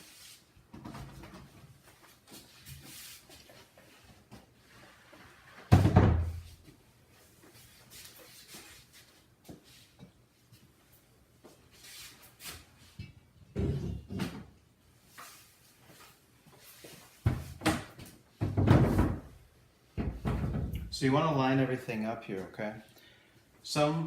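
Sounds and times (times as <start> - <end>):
door hardware knocks and clunks: 20.0 - 20.8.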